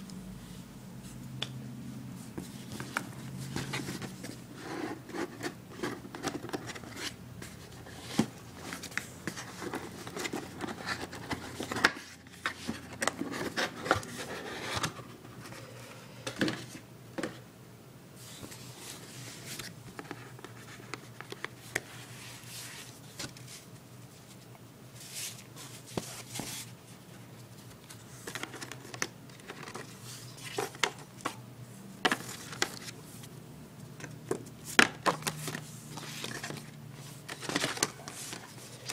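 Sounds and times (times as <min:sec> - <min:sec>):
steady low hum: 0:00.0 - 0:38.9
packaging rustling and crinkling: 0:34.7 - 0:38.9.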